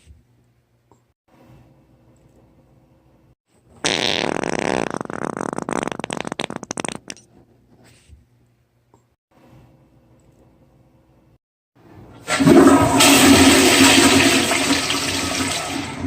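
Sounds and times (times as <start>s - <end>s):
long loud fart: 3.8s - 7.1s.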